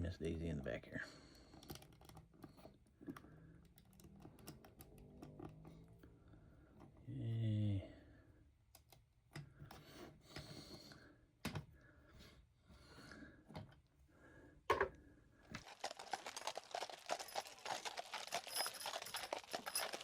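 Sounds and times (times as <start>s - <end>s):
rattle of small clicks: 15.6s - 20.0s.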